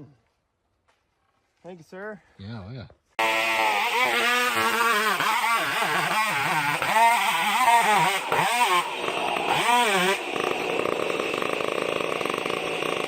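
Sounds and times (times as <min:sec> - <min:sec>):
chainsaw engine running hard: 0:03.2 - 0:13.0.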